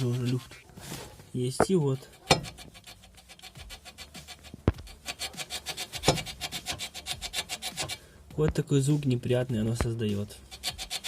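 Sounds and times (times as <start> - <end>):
rubber bushing creaking: 0.0 - 8.6, 9.6 - 11.0
sharp knocks: 6.0 - 6.8.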